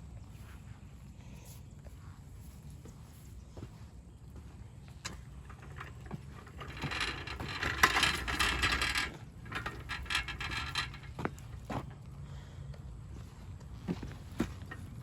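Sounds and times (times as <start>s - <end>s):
metal hand truck rattling and scraping: 5.0s - 12.0s, 14.0s - 15.0s.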